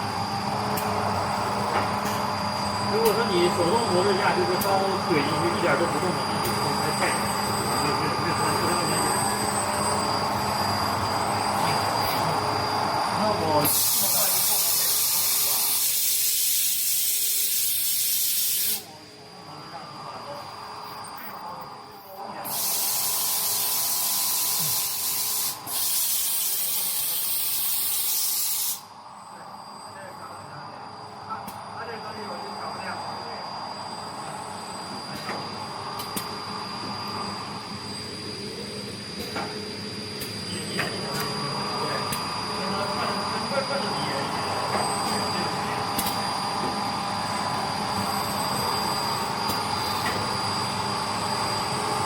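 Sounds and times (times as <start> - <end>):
high-pitched whine: 0.0 - 17.8, 18.5 - 52.0
machine noise: 0.0 - 52.0
ultrasonic welder shrill hiss: 13.2 - 19.0, 22.4 - 28.9, 45.0 - 52.0.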